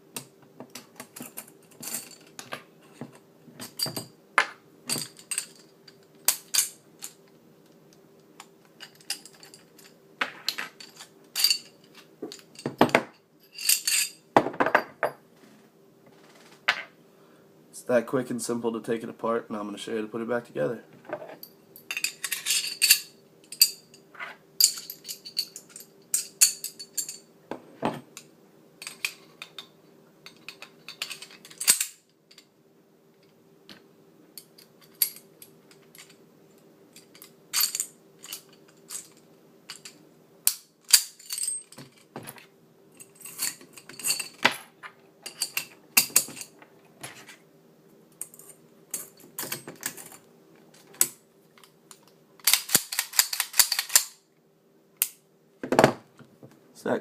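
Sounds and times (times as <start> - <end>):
faint steady hum: 0.0 - 57.0
metallic clicks of pistol parts: 51.6 - 54.2.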